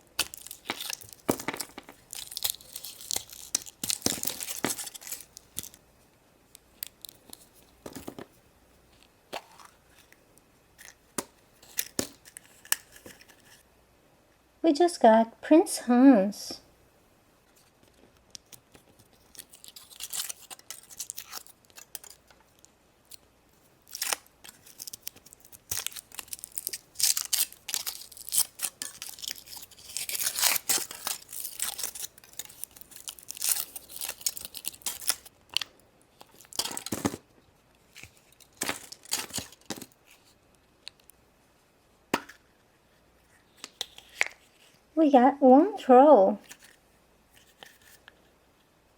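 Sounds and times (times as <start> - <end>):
foil wrapper crinkling: 0.1 - 5.8, 18.3 - 22.7, 23.8 - 37.2, 37.9 - 41.1.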